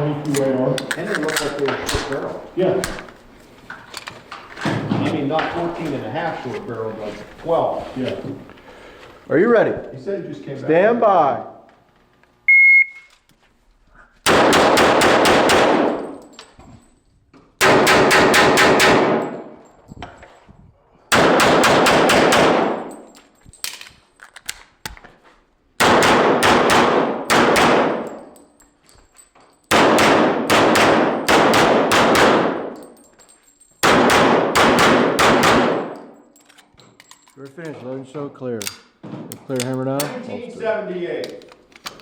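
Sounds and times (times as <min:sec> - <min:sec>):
pistol shots echoing indoors: 0:14.2 - 0:16.4, 0:17.6 - 0:19.8, 0:21.1 - 0:23.2, 0:25.8 - 0:28.6, 0:29.6 - 0:33.0, 0:33.8 - 0:36.3.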